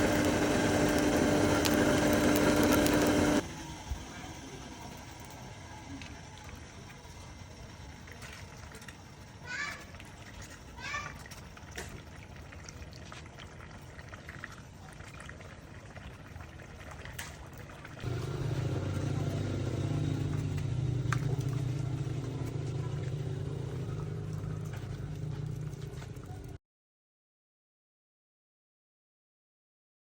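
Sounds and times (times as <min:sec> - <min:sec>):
low machine drone: 0:18.0 - 0:26.6.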